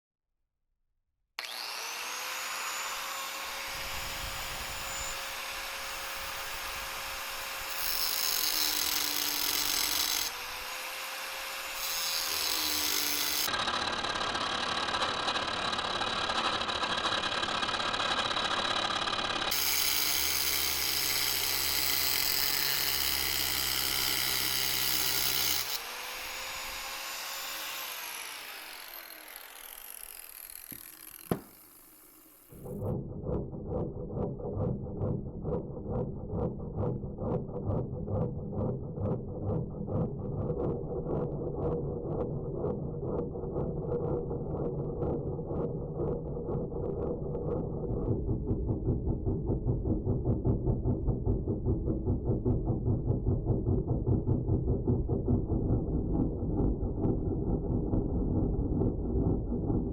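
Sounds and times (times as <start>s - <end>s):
angle grinder cutting steel: 1.4s - 32.8s.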